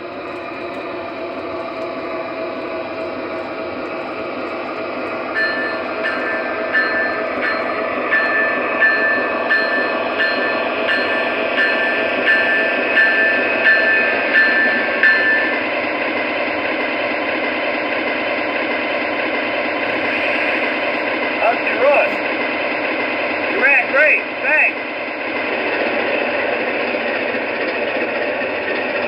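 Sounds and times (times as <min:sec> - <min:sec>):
locomotive bell ringing: 0:00.0 - 0:17.1, 0:19.0 - 0:22.3
locomotive running rumble: 0:00.0 - 0:29.0
model train on track: 0:00.0 - 0:29.0.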